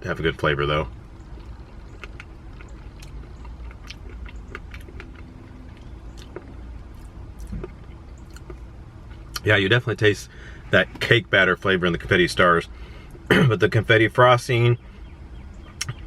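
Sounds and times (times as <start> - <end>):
steady low hum: 0.0 - 16.0
quiet chewing: 0.8 - 9.5.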